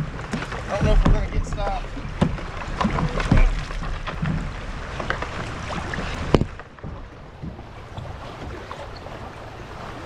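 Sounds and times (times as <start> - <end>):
knocks on kayak: 0.3 - 5.4.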